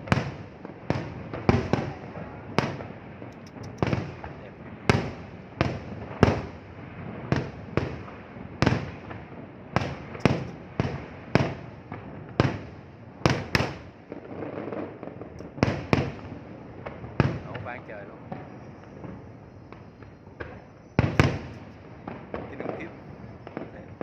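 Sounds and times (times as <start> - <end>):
fireworks shells bursting: 1.0 - 6.4, 9.8 - 11.6, 13.3 - 24.0.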